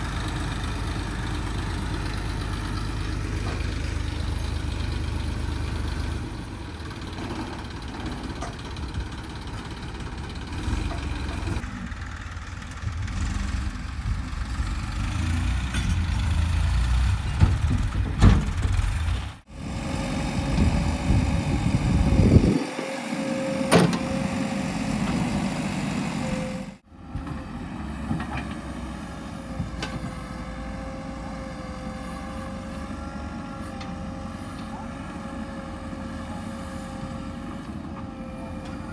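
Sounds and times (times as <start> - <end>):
heavy diesel machinery engines: 0.0 - 38.9
steady whine: 19.5 - 26.8.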